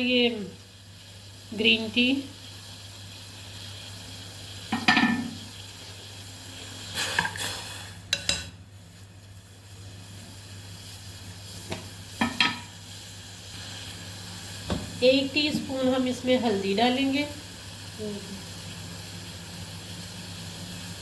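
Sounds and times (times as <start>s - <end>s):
water simmering in a pan: 0.0s - 21.0s
spoon clinking and scraping pan: 8.1s - 8.5s.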